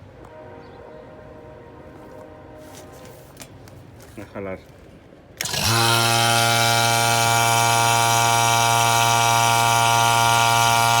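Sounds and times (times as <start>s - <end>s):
vacuum pump humming: 5.4s - 11.0s.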